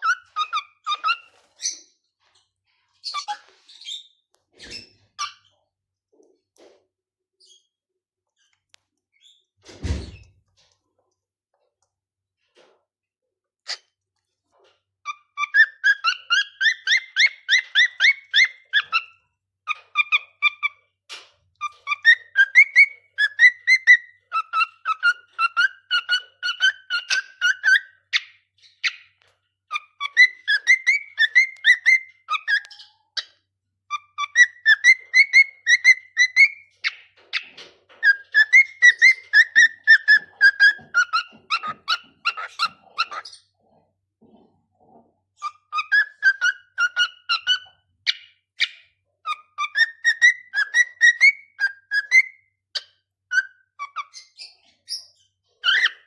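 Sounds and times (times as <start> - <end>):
cockatiel whistling: 21.8 - 27.9, 30.0 - 32.7, 33.9 - 36.6, 38.0 - 43.2, 49.3 - 52.4.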